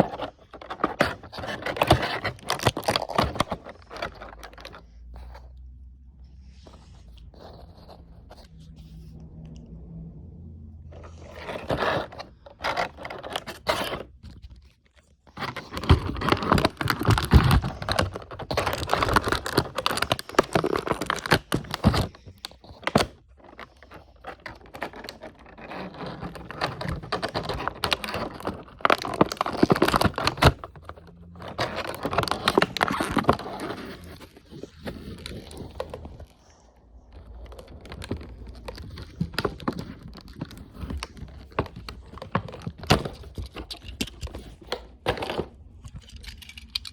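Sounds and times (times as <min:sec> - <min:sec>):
packaging rustling and crinkling: 0:00.0 - 0:05.4, 0:11.0 - 0:46.9
small clicks and knocks: 0:37.2 - 0:46.9.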